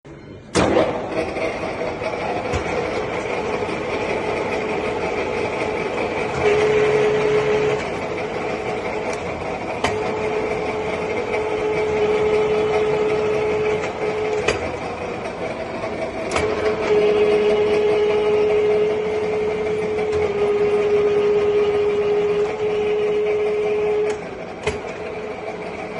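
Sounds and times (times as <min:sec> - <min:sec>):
machine whine: 0:00.1 - 0:25.9
milling machine drone: 0:00.1 - 0:25.9.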